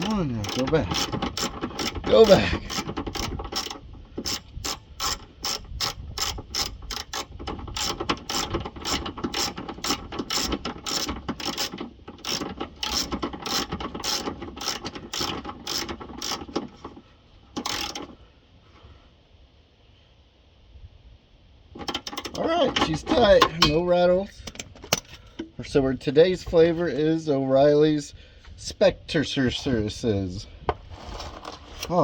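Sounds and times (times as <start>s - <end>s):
ratchet wrench clicking: 0.0s - 16.8s, 17.6s - 18.1s.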